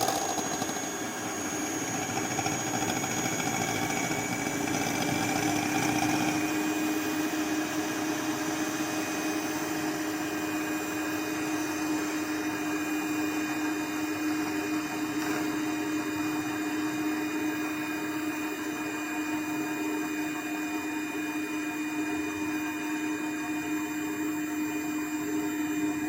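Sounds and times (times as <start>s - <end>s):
electric hand mixer running: 0.0s - 26.0s.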